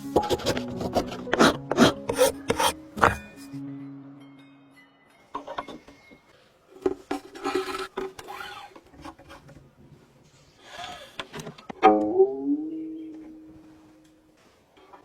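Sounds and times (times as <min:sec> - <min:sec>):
rubbing and scraping on wood: 0:00.2 - 0:03.4.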